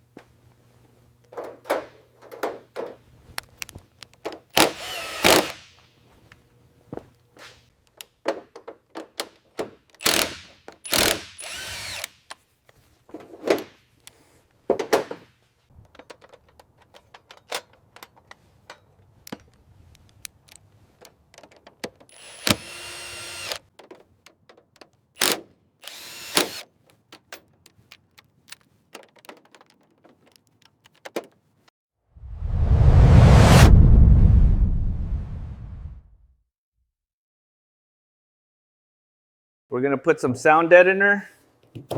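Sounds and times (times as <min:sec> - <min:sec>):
power drill running: 0:04.6 - 0:05.7, 0:10.0 - 0:12.2, 0:22.1 - 0:23.7, 0:25.2 - 0:26.7
loud low whoosh: 0:32.2 - 0:36.2.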